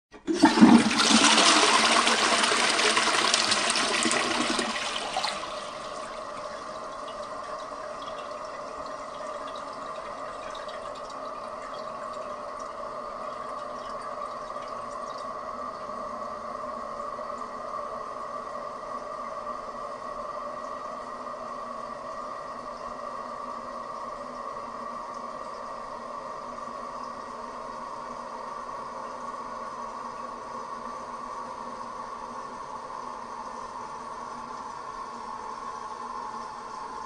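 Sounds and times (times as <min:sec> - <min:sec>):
toilet flushing: 0:00.1 - 0:17.3
toilet tank refilling whine: 0:00.1 - 0:37.0.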